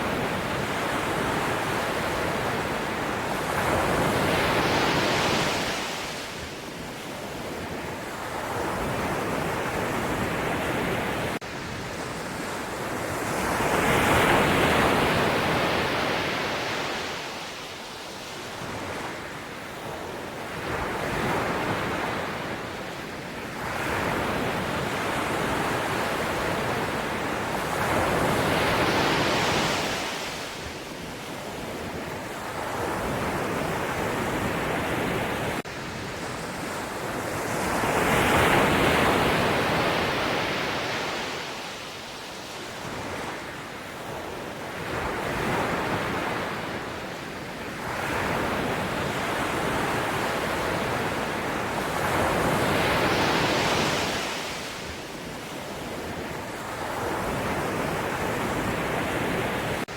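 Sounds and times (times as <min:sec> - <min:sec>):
ocean waves breaking: 0:47.8 - 0:59.9.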